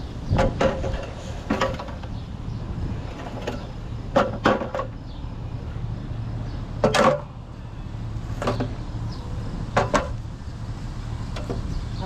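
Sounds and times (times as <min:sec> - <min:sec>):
scrap metal knocks and clanks: 0:00.3 - 0:02.2, 0:03.0 - 0:05.0, 0:06.8 - 0:07.3, 0:09.7 - 0:10.2.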